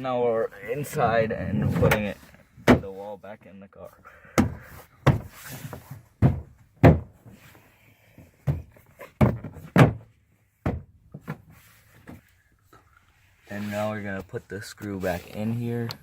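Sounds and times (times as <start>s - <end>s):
knocks and thumps on door panel: 6.2s - 7.2s, 8.4s - 11.3s.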